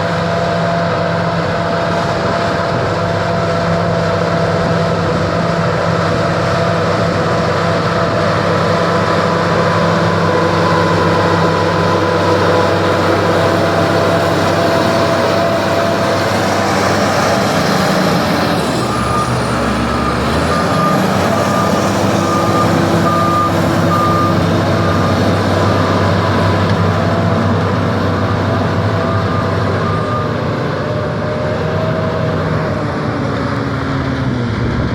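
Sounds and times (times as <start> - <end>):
bulldozer diesel engine running: 0.0 - 34.9
reversing alarm beeps: 7.2 - 31.2.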